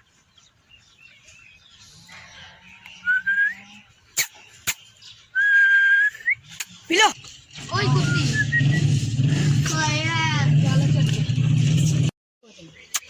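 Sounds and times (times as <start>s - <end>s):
person whistling: 3.1s - 3.5s, 5.4s - 6.4s, 8.3s - 8.8s.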